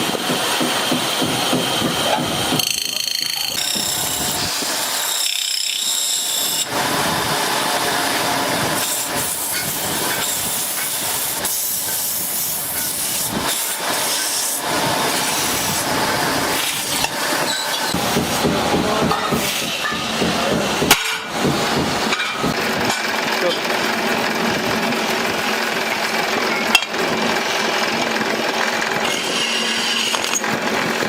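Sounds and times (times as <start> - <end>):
machinery hissing: 6.3 - 26.4
sharp knocks: 17.9 - 23.0.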